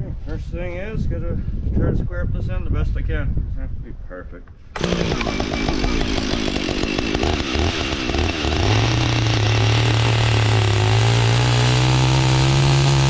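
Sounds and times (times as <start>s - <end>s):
chainsaw engine running: 4.8s - 13.0s.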